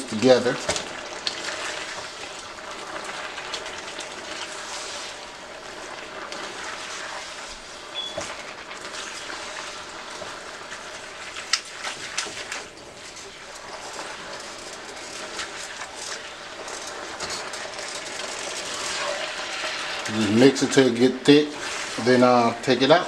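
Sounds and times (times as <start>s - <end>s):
noodles sizzling in a pan: 0.0s - 23.0s
utensil clicking against pan: 11.5s - 12.9s.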